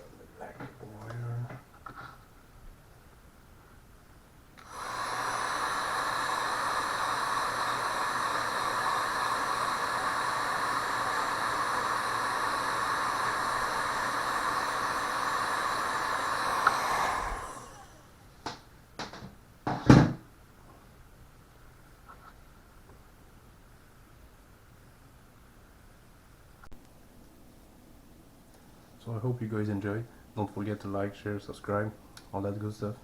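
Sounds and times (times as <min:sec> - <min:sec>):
heat gun blowing: 0:04.6 - 0:18.3.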